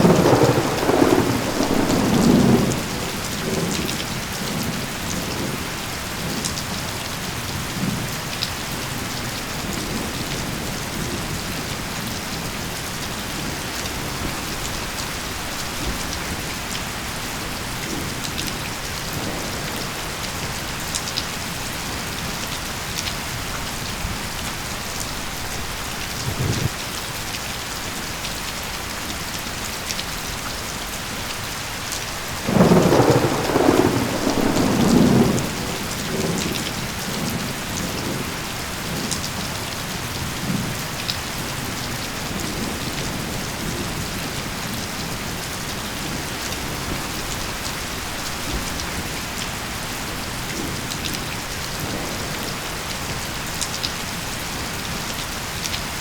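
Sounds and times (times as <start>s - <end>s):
thunder rumble: 0.0s - 5.6s, 25.4s - 26.8s, 32.4s - 39.0s
steady rain falling: 0.0s - 56.0s.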